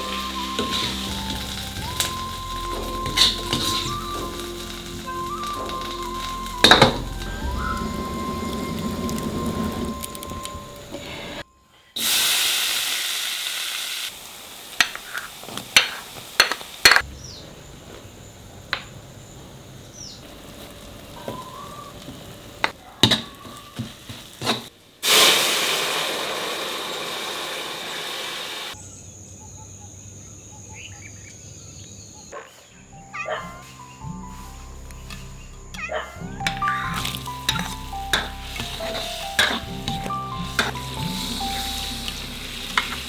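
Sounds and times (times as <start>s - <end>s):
food sizzling in hot oil: 0.0s - 11.4s, 12.0s - 17.4s, 20.1s - 28.8s, 36.4s - 43.0s.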